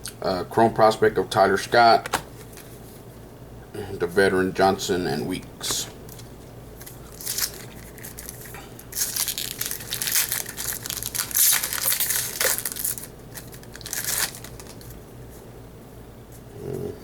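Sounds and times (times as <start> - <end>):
wrapper tearing and crinkling: 6.2 - 15.0.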